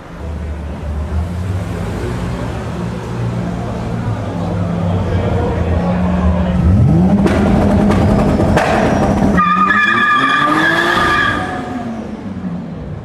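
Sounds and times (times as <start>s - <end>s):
car engine revving with crackling: 6.5s - 12.4s
high-pitched squeal: 8.4s - 12.0s.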